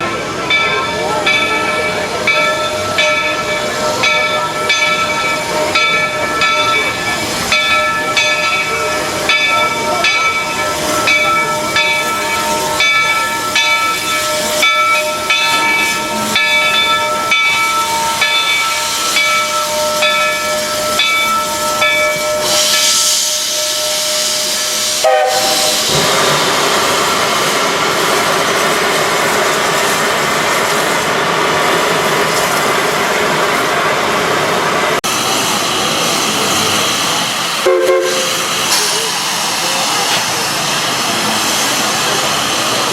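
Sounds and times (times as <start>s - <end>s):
steam locomotive bell ringing: 0.0s - 26.4s, 35.8s - 42.9s
steam hissing: 1.6s - 33.7s, 34.4s - 42.9s.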